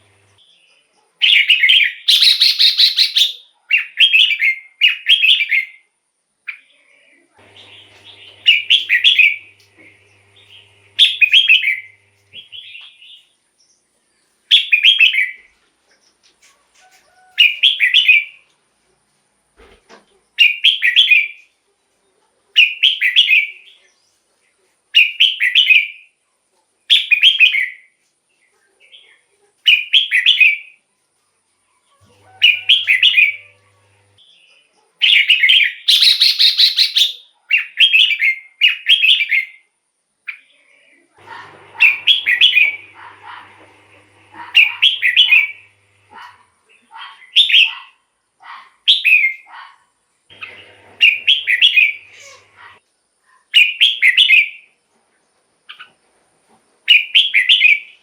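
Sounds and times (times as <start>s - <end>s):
bird singing short phrases: 1.4s - 5.6s, 35.9s - 37.2s, 44.2s - 47.8s.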